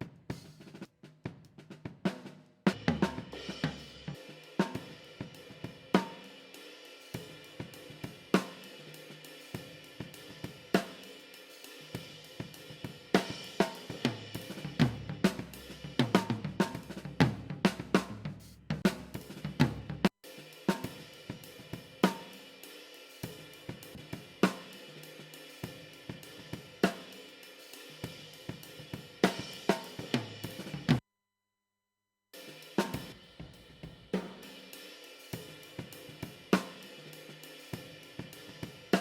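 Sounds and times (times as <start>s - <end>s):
acoustic drum kit playing: 0.0s - 31.0s, 32.5s - 39.0s.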